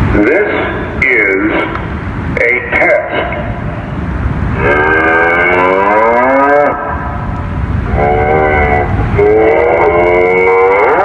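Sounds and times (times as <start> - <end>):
cow mooing over loudspeakers: 4.5 - 11.0.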